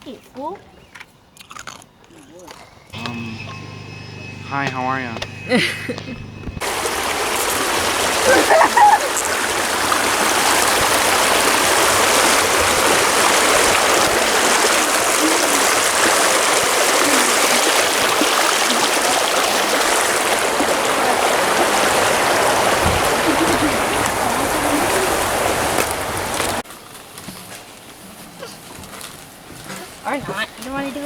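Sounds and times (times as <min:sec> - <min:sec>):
water rushing: 0:03.0 - 0:26.6.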